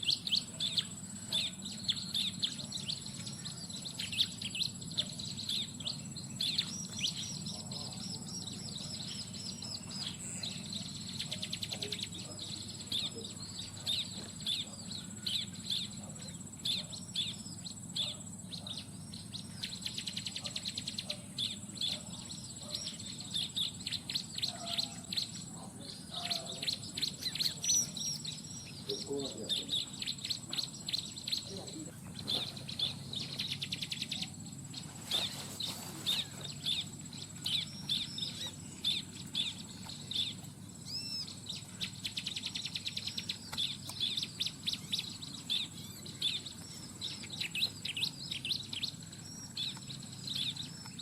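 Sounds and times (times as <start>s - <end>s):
birds chirping: 0.0s - 51.0s
high insect drone: 0.0s - 51.0s.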